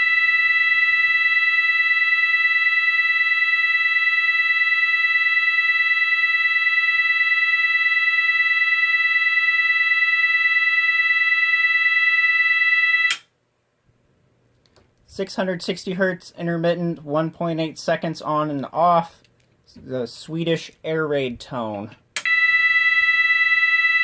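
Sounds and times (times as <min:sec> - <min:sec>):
continuous alarm tone: 0:00.0 - 0:13.2, 0:22.2 - 0:24.0.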